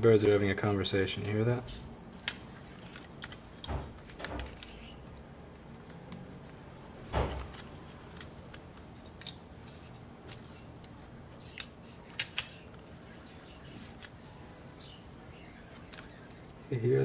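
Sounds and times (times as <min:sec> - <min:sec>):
sharp clicks of small parts: 0:02.2 - 0:04.8, 0:10.3 - 0:12.9.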